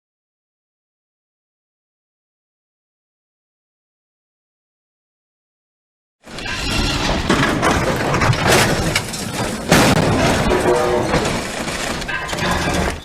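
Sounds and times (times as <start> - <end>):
bus crash impact: 6.3 - 13.0.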